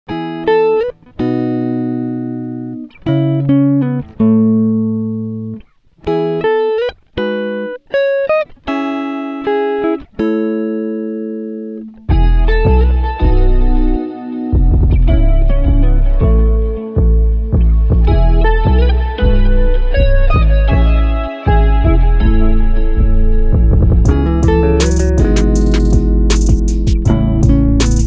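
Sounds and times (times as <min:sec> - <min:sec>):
plucked guitar chords: 0:00.1 - 0:28.0
deep bass music: 0:12.1 - 0:28.0.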